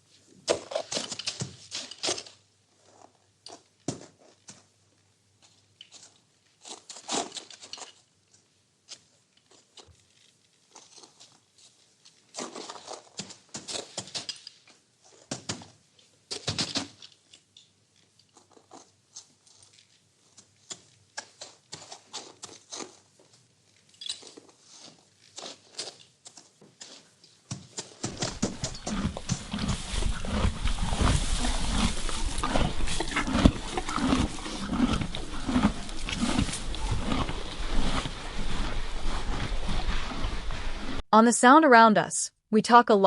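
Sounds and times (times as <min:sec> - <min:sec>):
hay rustling and crackling: 0:28.4 - 0:40.6.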